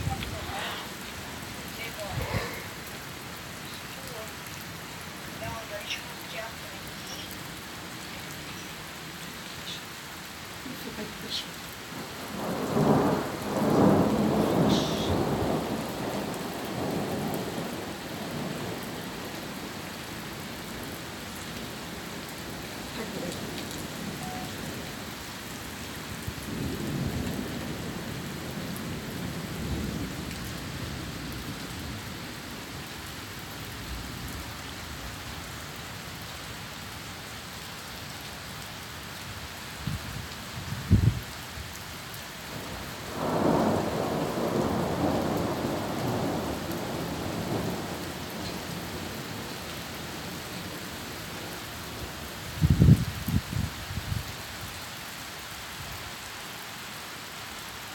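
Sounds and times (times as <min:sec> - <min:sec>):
rolling thunder: 0:00.0 - 0:03.3, 0:12.0 - 0:19.8, 0:26.1 - 0:32.1, 0:39.8 - 0:41.4, 0:42.5 - 0:49.4, 0:52.5 - 0:54.2
rain falling: 0:00.0 - 0:57.9.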